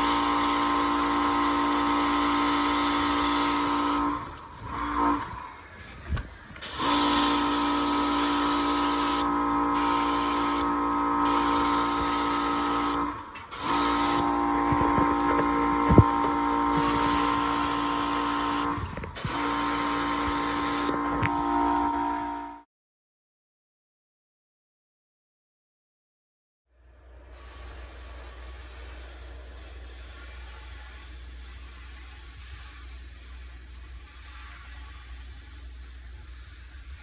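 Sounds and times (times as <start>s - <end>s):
water spray hissing: 0.0s - 21.0s, 27.4s - 37.0s
pump motor humming: 0.0s - 22.6s.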